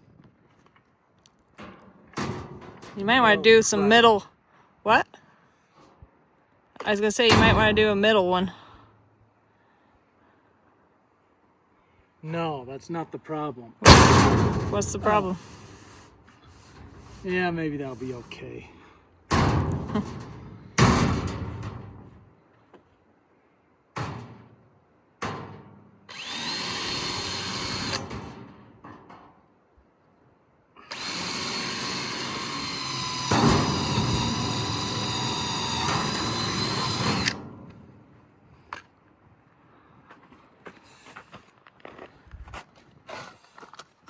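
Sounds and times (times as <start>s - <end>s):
power drill whining: 14.7s - 18.4s, 26.1s - 28.1s, 30.9s - 37.4s.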